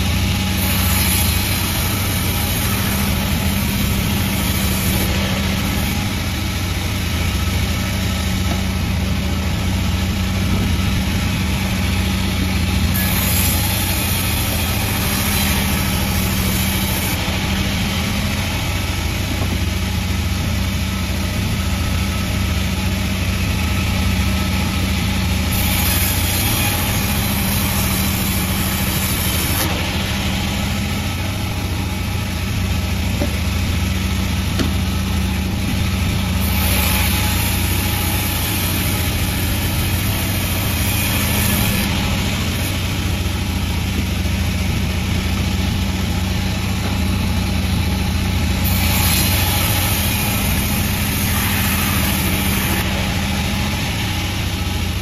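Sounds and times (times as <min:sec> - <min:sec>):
sawmill engine humming: 0:00.0 - 0:55.0.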